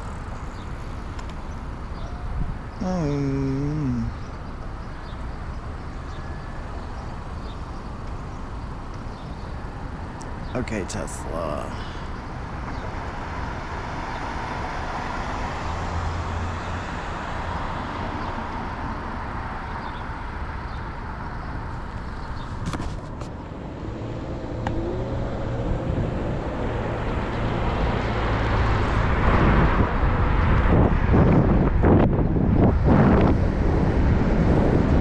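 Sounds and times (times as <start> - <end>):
road noise: 0.0 - 35.0
passing vehicle engine hum: 11.4 - 35.0
wind rush: 23.7 - 35.0.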